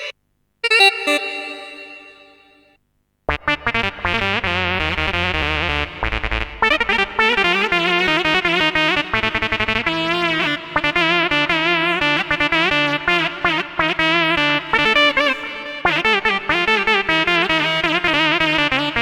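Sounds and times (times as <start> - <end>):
keyboard held chord: 0.0 - 2.7
lead melody with vibrato: 0.0 - 2.7.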